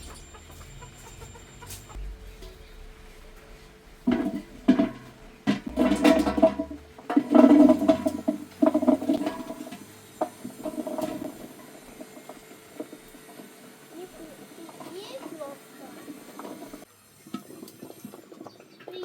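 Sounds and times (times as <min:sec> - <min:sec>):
water pouring and sloshing: 0:04.1 - 0:12.4.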